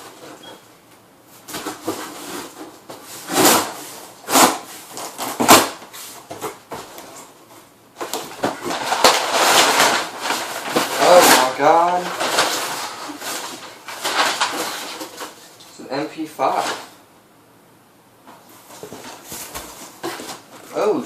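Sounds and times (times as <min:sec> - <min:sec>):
cardboard rustling: 0:01.3 - 0:15.7, 0:18.4 - 0:21.0
cardboard box tearing and scraping: 0:03.2 - 0:05.8.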